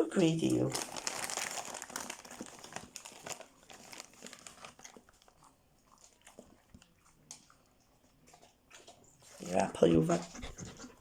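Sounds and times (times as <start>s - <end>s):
plastic packet crinkling: 0.2s - 6.9s.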